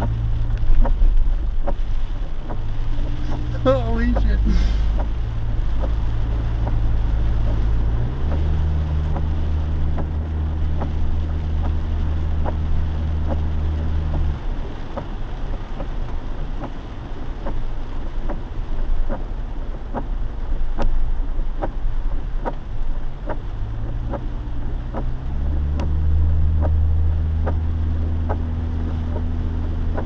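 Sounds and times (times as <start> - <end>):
low engine drone: 0.0 - 14.7
light ticks: 0.0 - 30.0
tyres rushing through water: 0.0 - 30.0.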